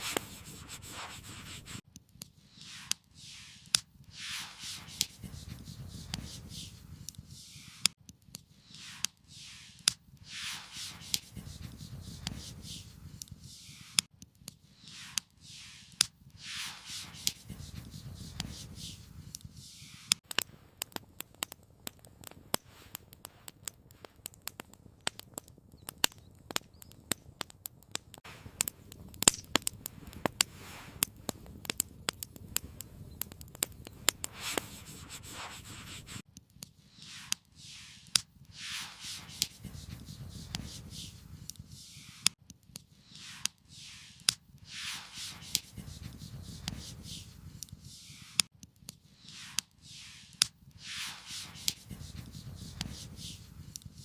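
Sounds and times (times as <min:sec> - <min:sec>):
campfire crackling and popping: 0:00.0 - 0:09.2, 0:09.8 - 0:54.0
soft rushing noise: 0:08.8 - 0:14.0, 0:38.6 - 0:41.2, 0:43.1 - 0:47.3, 0:49.3 - 0:52.8.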